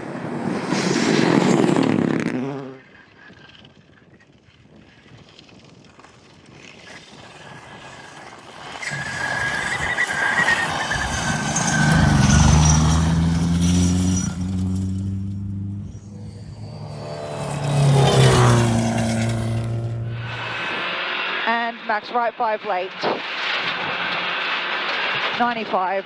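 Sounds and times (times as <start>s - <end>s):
rally car engine passing: 0.0s - 2.8s, 7.4s - 21.6s
car engine rising: 7.8s - 22.0s.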